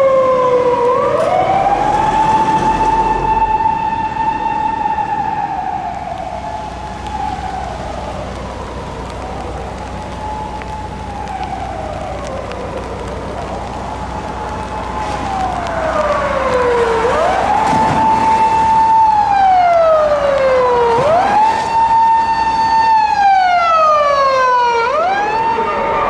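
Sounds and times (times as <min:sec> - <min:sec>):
police car siren wailing: 0:00.0 - 0:26.0.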